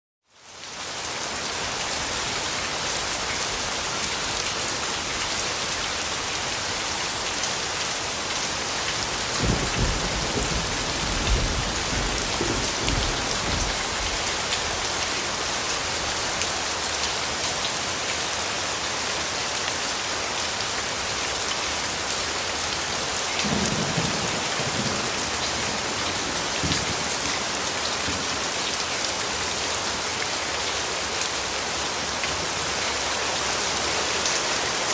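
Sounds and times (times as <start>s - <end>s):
steady rain: 0.2s - 34.9s
thunder rumbling: 9.3s - 14.4s.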